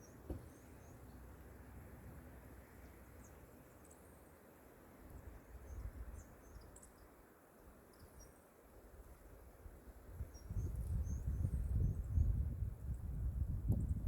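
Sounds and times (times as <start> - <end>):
faint high chirps and ticks: 2.8 - 4.4, 5.0 - 9.3.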